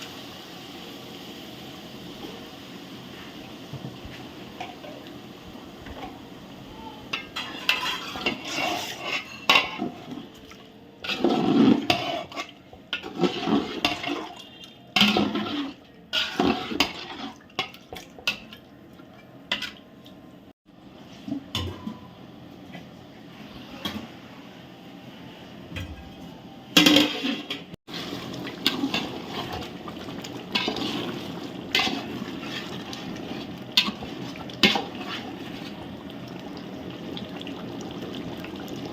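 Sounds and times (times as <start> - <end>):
metal utensil scraping pot: 7.1 - 10.3, 11.0 - 18.5, 26.8 - 35.8.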